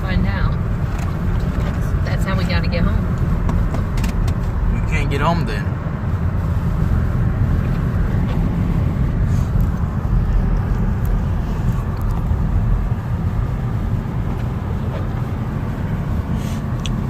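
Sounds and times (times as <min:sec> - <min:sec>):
car road noise drone: 0:00.0 - 0:17.0.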